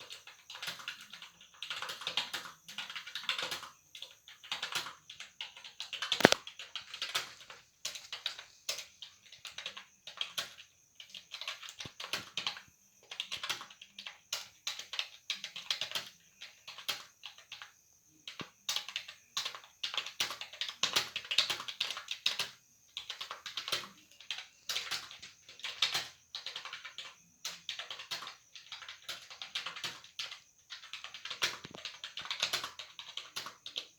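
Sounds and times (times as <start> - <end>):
fast typing on keyboard: 0.5 - 8.4, 18.7 - 33.9.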